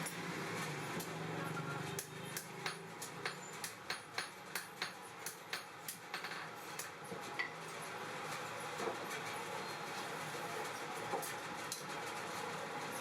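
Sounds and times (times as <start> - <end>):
hammer striking steel on anvil: 2.0 - 7.0.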